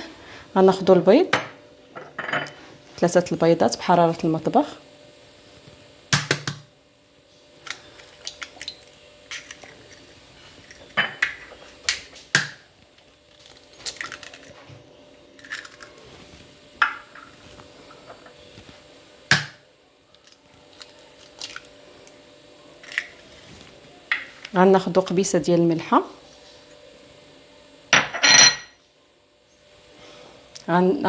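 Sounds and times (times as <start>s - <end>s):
eggs cracking against bowl: 7.6s - 12.7s, 13.3s - 14.6s, 15.4s - 16.0s, 20.2s - 21.8s.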